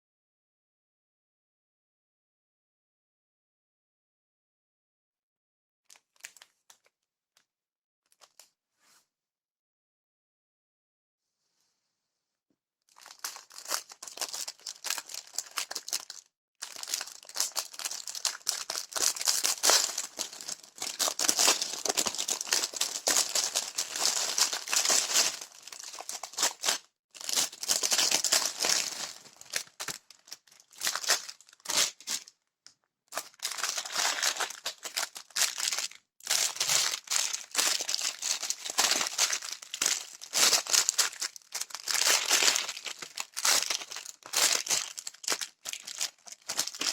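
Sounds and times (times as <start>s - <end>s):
packaging crinkling and tearing: 12.9s - 32.3s, 33.1s - 46.9s.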